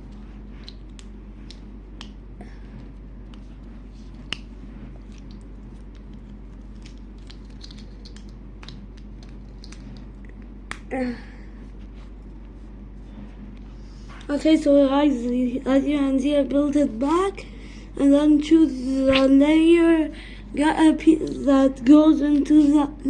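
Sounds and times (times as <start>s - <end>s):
plastic cube pieces clicking: 6.8s - 9.8s.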